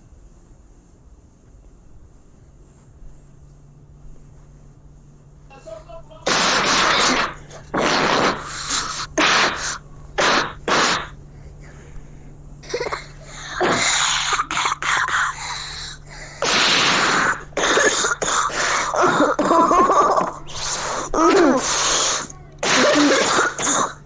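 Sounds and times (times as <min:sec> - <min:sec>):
person coughing: 0:06.2 - 0:11.1, 0:12.6 - 0:15.1, 0:16.4 - 0:24.0.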